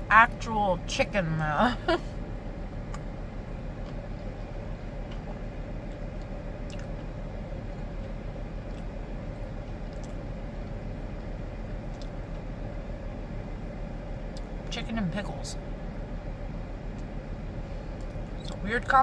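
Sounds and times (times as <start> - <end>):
low background hum: 0.0 - 19.0
person chewing: 6.0 - 8.9.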